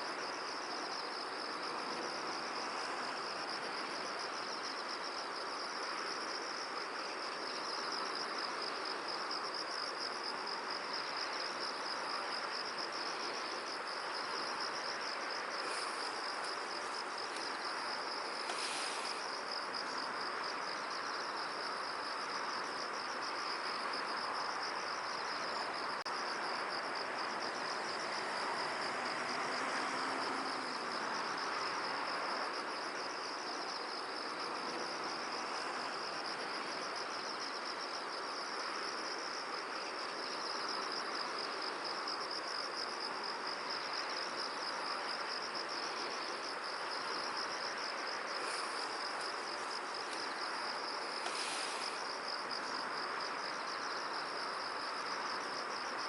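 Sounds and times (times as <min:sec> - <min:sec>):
insect trill: 0:00.0 - 0:56.0.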